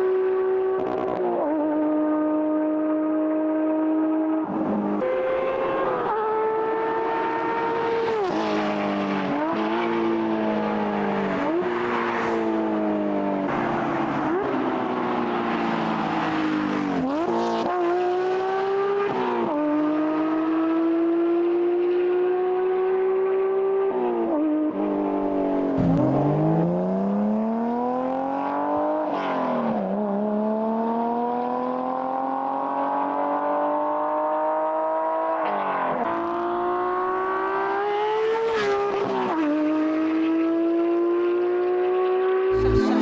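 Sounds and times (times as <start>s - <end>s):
car engine at high revs: 0.0s - 43.0s.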